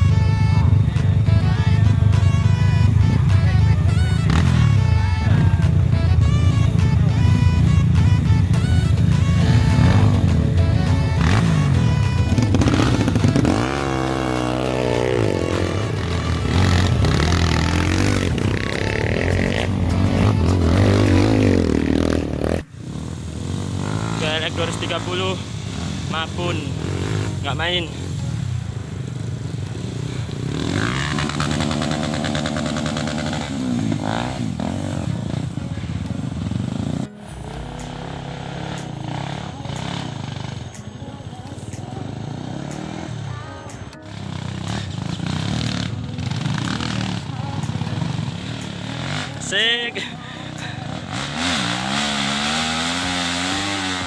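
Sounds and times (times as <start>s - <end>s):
motorcycle engine revving: 0.0s - 54.0s
music playing: 0.0s - 54.0s.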